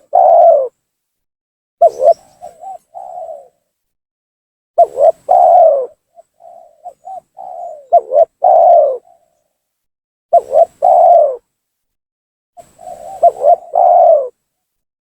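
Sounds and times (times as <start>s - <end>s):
dove cooing: 0.0s - 0.8s, 1.8s - 3.7s, 4.8s - 9.4s, 10.3s - 11.5s, 12.6s - 14.4s.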